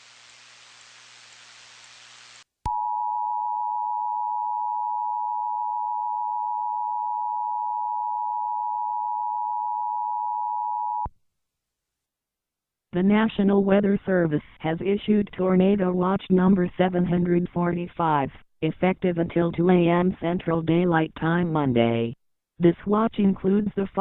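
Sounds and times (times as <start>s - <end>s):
faint static hiss: 0.0s - 2.6s.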